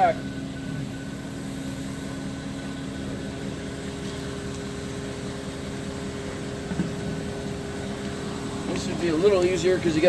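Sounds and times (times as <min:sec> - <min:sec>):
vehicle engine idling: 0:00.0 - 0:10.0.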